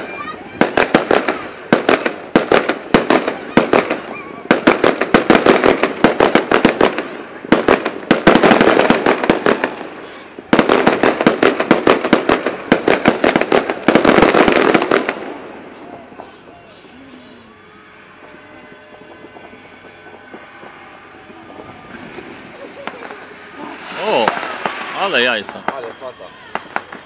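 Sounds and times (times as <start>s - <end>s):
fireworks bangs and crackling: 0.0s - 27.0s.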